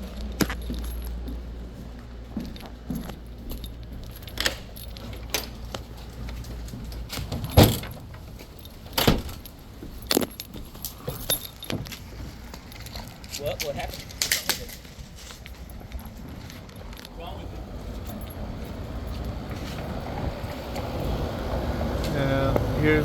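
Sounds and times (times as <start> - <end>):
keys jangling: 0.0 - 20.0.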